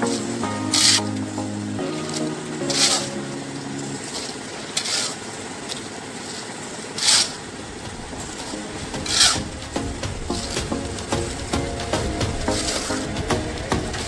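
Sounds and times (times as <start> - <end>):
music: 0.0 - 4.0, 8.1 - 14.0
steady background noise: 0.0 - 14.0
rasping scrapes: 4.8 - 5.2, 7.0 - 7.4, 9.0 - 9.6.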